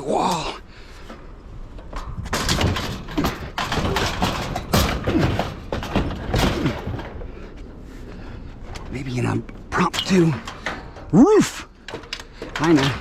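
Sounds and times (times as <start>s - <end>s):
junk knocking and clattering: 1.2s - 7.8s, 8.6s - 13.0s.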